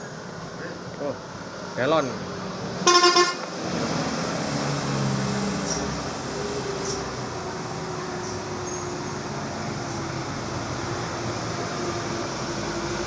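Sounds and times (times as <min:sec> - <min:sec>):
road and rain hiss: 0:00.0 - 0:13.0.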